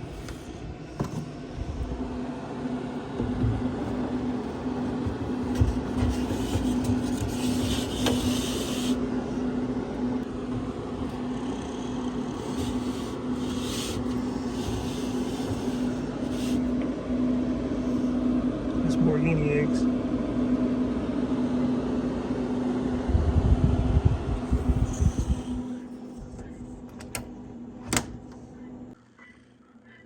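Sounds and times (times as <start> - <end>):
motor humming: 0.0 - 18.1, 24.3 - 28.9.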